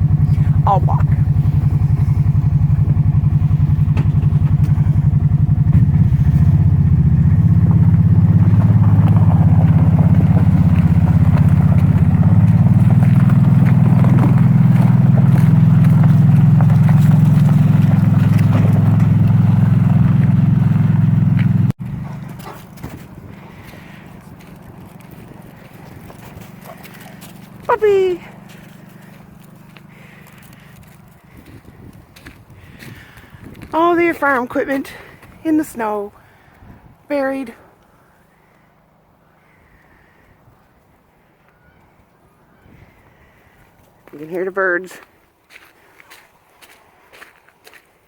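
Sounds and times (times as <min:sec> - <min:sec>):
small motorbike engine running: 0:00.0 - 0:35.4.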